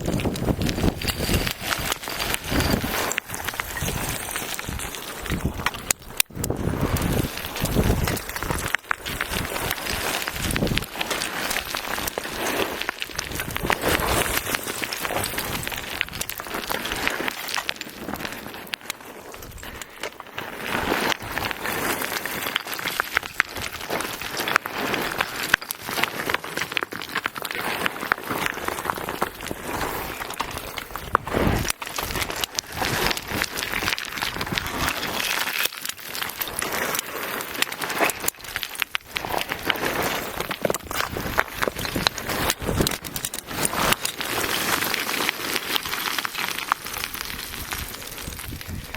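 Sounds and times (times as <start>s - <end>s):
rocks tumbling and clattering: 0.0s - 48.9s.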